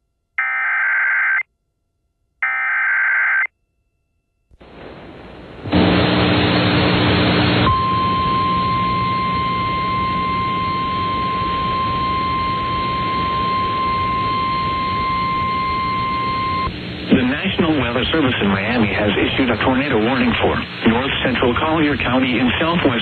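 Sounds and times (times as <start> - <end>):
low hum: 3.8 - 23.0
radio static hiss: 4.6 - 7.7, 16.7 - 23.0
steady alarm tone: 7.6 - 16.9.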